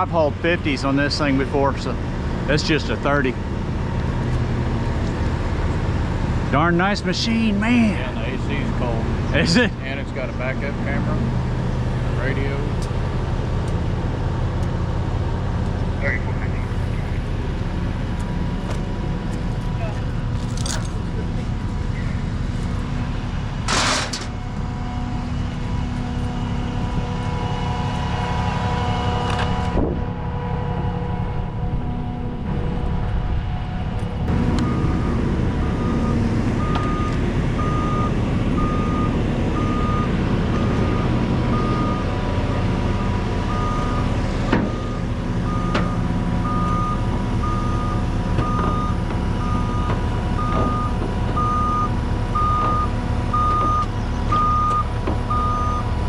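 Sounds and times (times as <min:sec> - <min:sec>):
diesel engine running: 0:00.0 - 0:56.0
backup alarm beeping: 0:23.7 - 0:24.3, 0:44.7 - 0:55.9.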